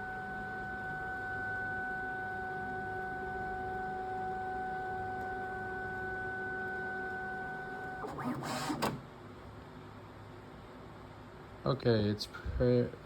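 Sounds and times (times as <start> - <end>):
printer whine and hum: 0.0 - 10.0.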